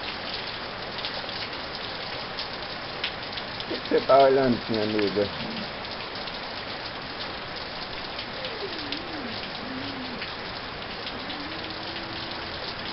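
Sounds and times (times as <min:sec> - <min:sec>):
rain falling: 0:00.0 - 0:12.9
faint wavering call: 0:08.2 - 0:12.9.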